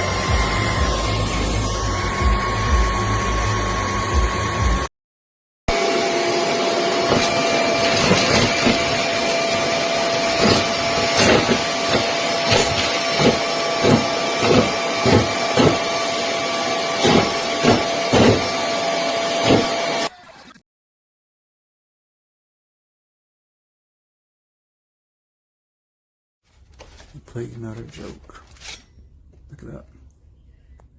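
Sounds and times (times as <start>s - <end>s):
vacuum cleaner motor whine: 0.0s - 4.9s, 5.7s - 20.6s.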